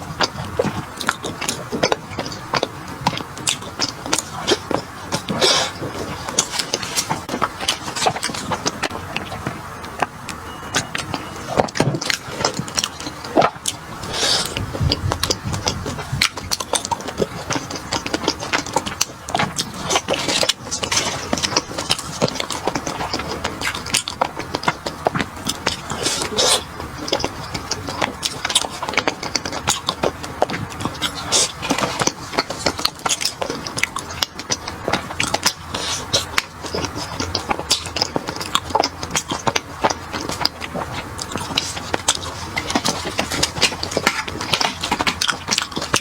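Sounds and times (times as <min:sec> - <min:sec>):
chewing with crunches: 0:00.0 - 0:46.0.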